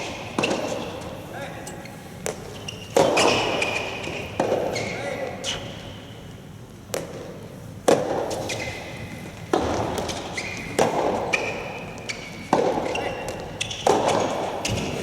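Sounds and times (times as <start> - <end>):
court shoes squeaking: 0.0 - 6.4, 7.9 - 15.0
rackets striking ball: 12.4 - 15.0.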